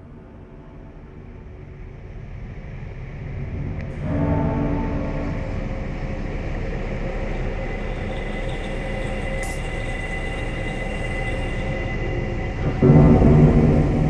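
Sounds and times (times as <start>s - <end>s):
mechanical rumble: 1.9s - 14.0s
thin high whine: 6.9s - 14.0s
brief hiss: 9.1s - 11.7s.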